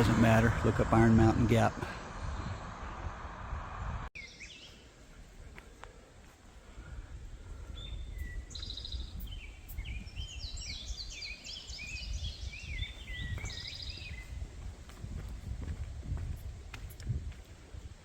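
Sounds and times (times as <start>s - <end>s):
steady low rumble: 0.0s - 4.1s
songbird singing: 0.0s - 18.0s.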